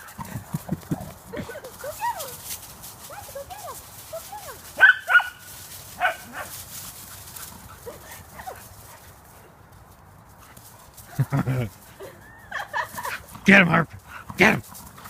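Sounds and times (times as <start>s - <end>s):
dogs yipping: 0.9s - 9.0s.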